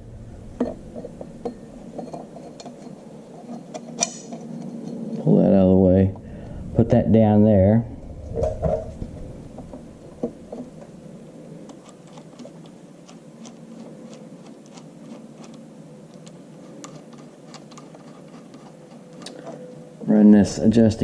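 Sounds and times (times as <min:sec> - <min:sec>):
faint steady hum: 0:00.0 - 0:21.0
small metal parts clicking: 0:11.7 - 0:19.6.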